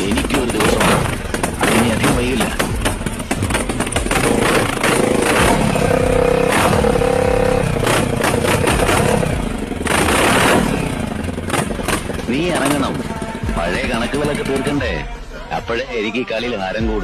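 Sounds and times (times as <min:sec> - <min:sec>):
clattering knocks: 0:00.0 - 0:06.0
engine running and revving: 0:00.0 - 0:15.0.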